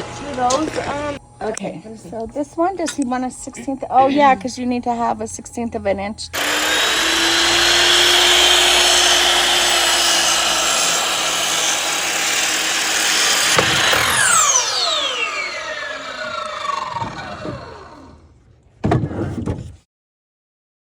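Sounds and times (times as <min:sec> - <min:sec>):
power saw cutting wood: 0:06.4 - 0:18.2.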